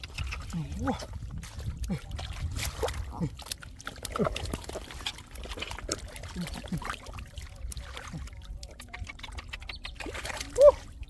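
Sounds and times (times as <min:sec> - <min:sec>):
water trickling and splashing: 0:00.0 - 0:11.0.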